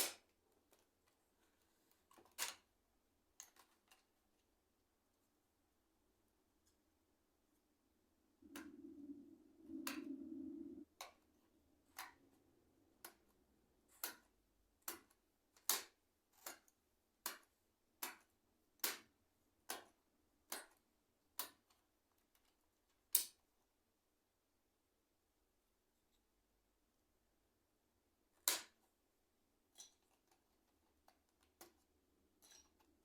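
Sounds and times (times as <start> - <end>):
low rubbing noise: 8.2 - 11.8.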